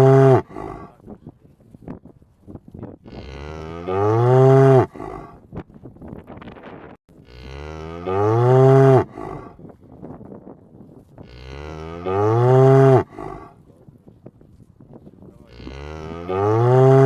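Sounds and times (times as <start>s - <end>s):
cow mooing: 0.0s - 0.9s, 3.1s - 5.4s, 7.2s - 9.5s, 11.3s - 13.6s, 15.5s - 17.0s.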